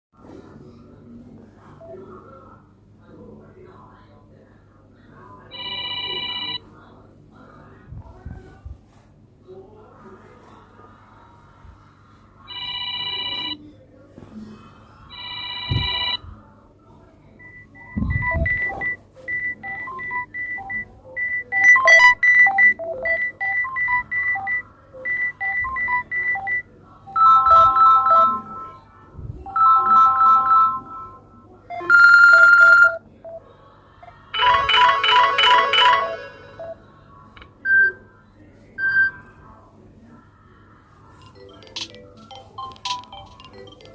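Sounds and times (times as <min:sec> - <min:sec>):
electronic ringtone melodies: 0:18.0 - 0:28.8, 0:34.4 - 0:36.8, 0:41.4 - 0:43.9.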